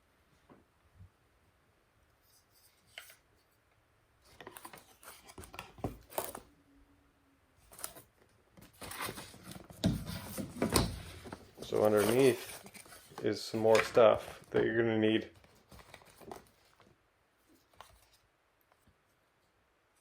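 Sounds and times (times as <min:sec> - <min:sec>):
packaging rustling and clicking: 0:07.7 - 0:14.7, 0:15.4 - 0:16.9.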